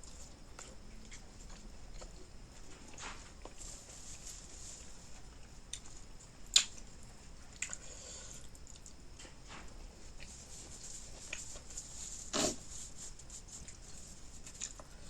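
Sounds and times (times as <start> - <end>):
mouth chewing food: 0.0 - 4.0, 4.8 - 9.4.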